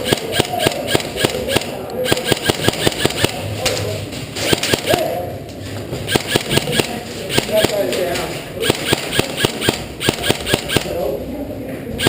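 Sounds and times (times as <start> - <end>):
airsoft guns firing: 0.0 - 3.5, 4.4 - 5.2, 6.1 - 11.0.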